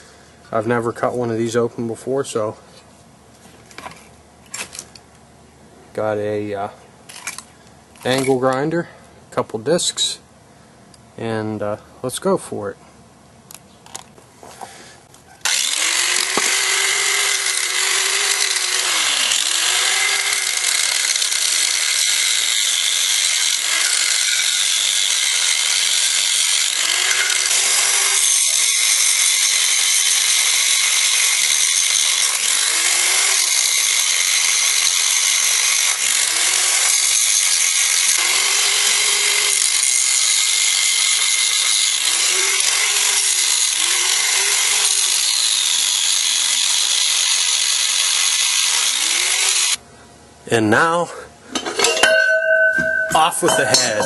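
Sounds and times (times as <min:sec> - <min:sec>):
angle grinder cutting steel: 0:15.4 - 0:49.8, 0:51.5 - 0:54.0.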